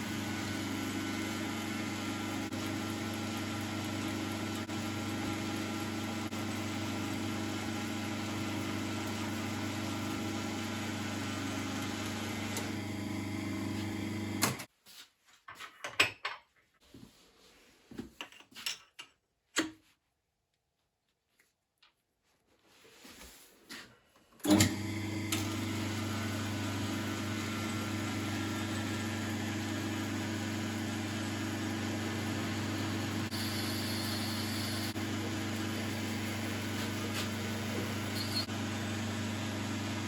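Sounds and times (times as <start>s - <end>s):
lathe humming: 0.0s - 14.7s, 24.5s - 40.0s.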